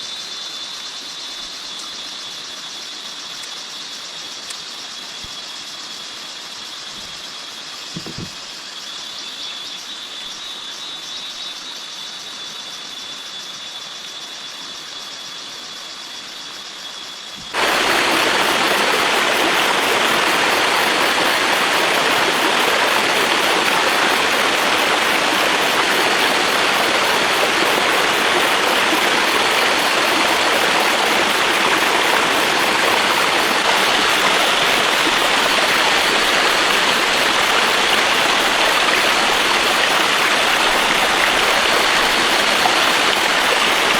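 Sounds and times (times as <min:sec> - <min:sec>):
rain hissing: 0:17.5 - 0:43.9
rushing water: 0:17.5 - 0:43.9.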